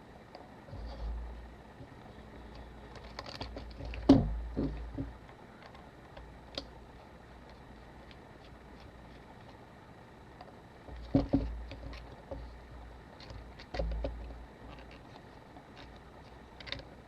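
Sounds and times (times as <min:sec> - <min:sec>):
small tools and metal parts clicking: 0:01.9 - 0:06.8, 0:13.1 - 0:17.0
knocks: 0:11.0 - 0:11.6.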